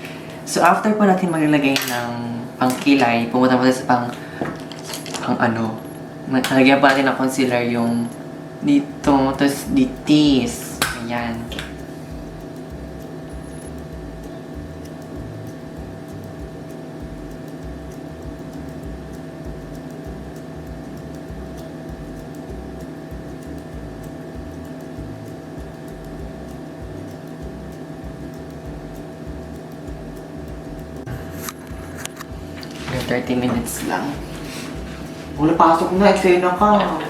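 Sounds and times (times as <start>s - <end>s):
steady mechanical hum: 0.0s - 37.0s
faint ticks: 9.0s - 37.0s.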